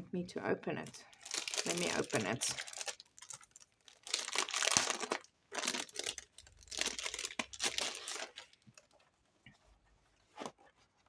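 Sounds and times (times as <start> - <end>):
packaging crinkling: 1.1 - 9.0
packet being torn open: 1.2 - 8.6.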